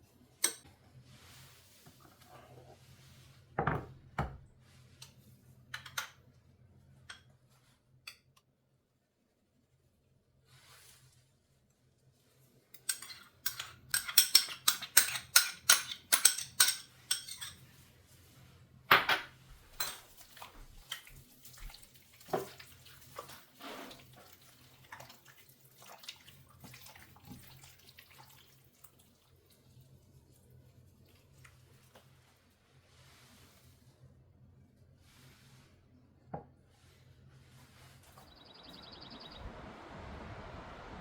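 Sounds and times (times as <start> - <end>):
dishes and utensils clinking: 12.8 - 17.6, 18.9 - 21.1.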